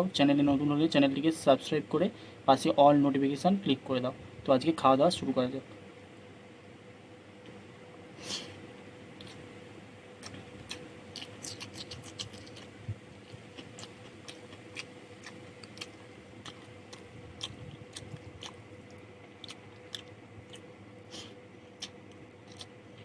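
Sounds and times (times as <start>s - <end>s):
faint steady hum: 0.0s - 23.0s
chewing with smacks: 9.1s - 9.5s, 10.1s - 23.0s.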